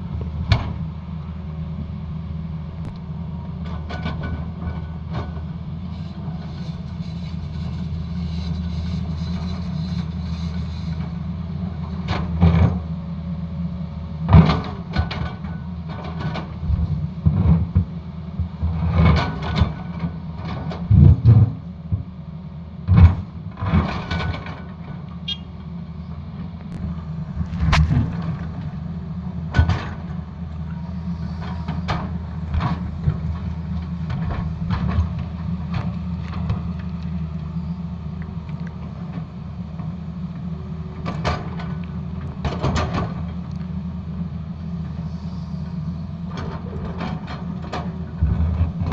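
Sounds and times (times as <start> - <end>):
excavator diesel engine running: 0.0 - 48.9
machine clanks and knocks: 41.0 - 43.5, 46.3 - 48.9.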